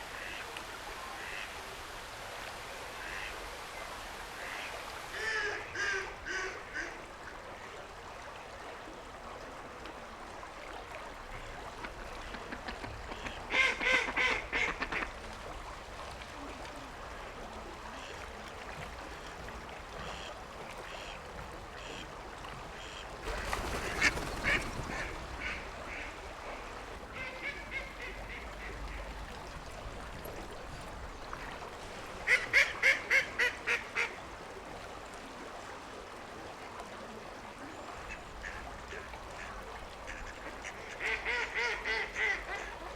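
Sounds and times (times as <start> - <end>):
steady background hiss: 0.0 - 7.8
ducks quacking: 0.2 - 0.5, 22.8 - 29.2, 32.2 - 34.2.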